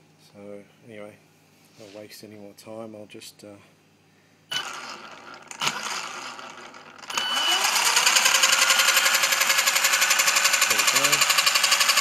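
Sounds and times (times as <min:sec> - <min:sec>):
electric motor whirring: 0:04.5 - 0:12.0.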